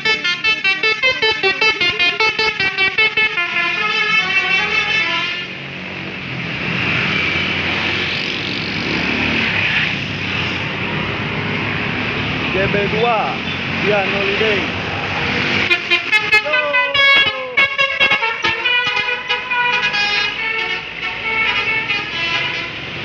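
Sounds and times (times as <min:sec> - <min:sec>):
musical bus horn melody: 0:00.0 - 0:05.6, 0:15.6 - 0:23.0
engine noise: 0:00.0 - 0:23.0
traffic noise: 0:00.0 - 0:23.0.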